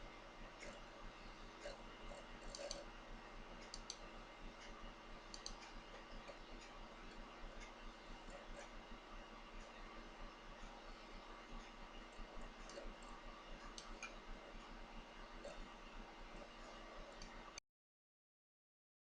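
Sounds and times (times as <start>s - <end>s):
low electrical hum: 0.0s - 17.6s
light clicks: 3.6s - 4.0s, 5.3s - 5.7s.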